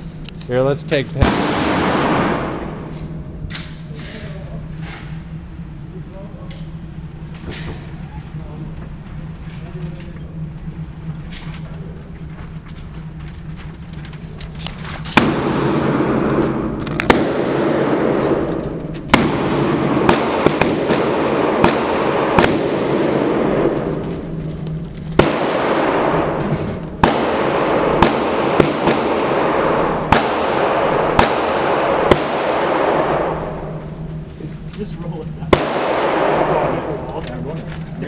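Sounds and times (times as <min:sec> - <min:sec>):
echoing gunshot reverberation: 0:01.2 - 0:03.9, 0:15.1 - 0:34.0, 0:35.5 - 0:37.7
handgun shots: 0:15.1 - 0:24.3, 0:25.2 - 0:33.6.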